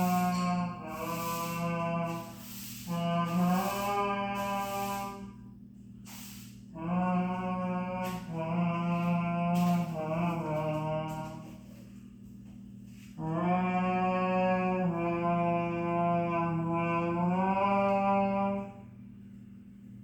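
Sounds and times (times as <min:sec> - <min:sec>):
long low brass notes: 0:00.0 - 0:05.2, 0:06.8 - 0:11.6, 0:13.2 - 0:19.0.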